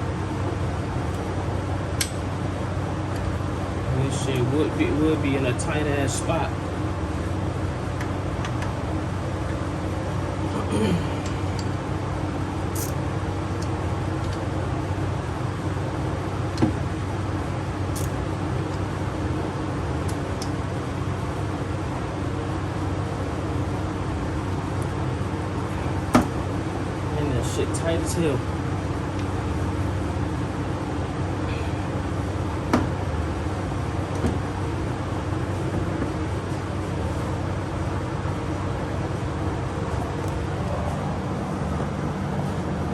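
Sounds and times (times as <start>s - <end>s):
mechanical hum and hiss: 0.0s - 42.9s
wrench clinking on bolt: 12.8s - 13.0s.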